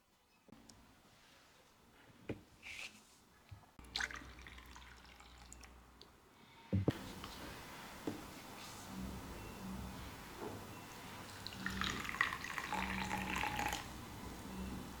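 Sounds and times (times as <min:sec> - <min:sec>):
tea set clinking: 0:11.2 - 0:14.0.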